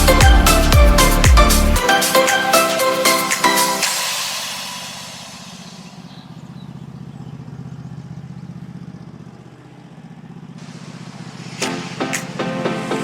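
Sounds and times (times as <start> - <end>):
low pulsing engine drone: 0.0 - 1.8, 4.7 - 13.0.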